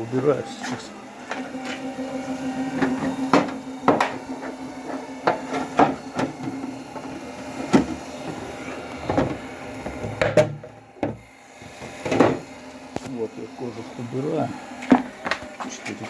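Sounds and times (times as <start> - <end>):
steady hum: 0.0 - 16.0
hollow plastic knocks and clatter: 2.8 - 8.4, 9.0 - 12.4.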